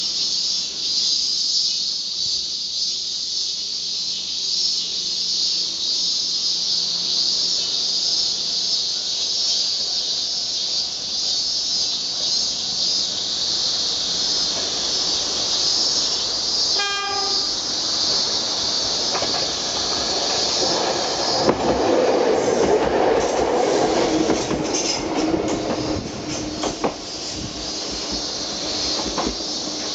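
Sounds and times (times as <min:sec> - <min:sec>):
train wheels clattering over rails: 0:11.2 - 0:29.9
train air horn blast: 0:16.8 - 0:17.6.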